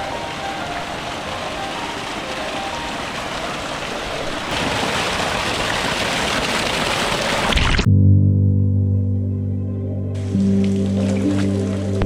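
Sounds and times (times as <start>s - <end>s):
rushing river water: 0.0s - 7.9s, 10.2s - 12.0s
soft low chords music: 7.9s - 12.0s.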